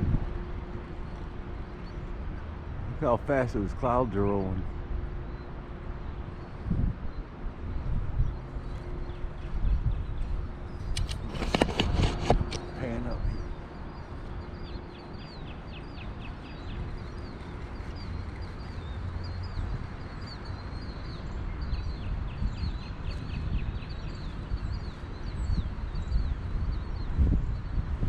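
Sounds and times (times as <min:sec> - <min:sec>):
songbird singing: 0:00.0 - 0:28.0
wind rumble on microphone: 0:00.0 - 0:28.0
bird chirps: 0:07.1 - 0:27.2.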